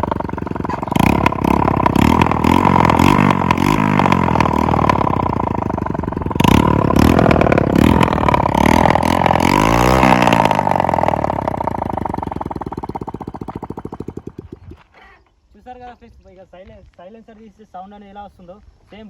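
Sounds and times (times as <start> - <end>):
exhaust pops: 0.0 - 14.8
unmuffled motorcycle engine revving: 0.0 - 14.9.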